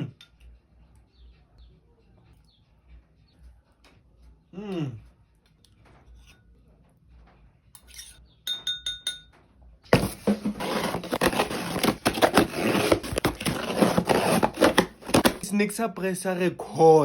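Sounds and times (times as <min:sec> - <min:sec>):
light clinks: 0:07.8 - 0:09.4
rustling and crackling: 0:10.0 - 0:15.5.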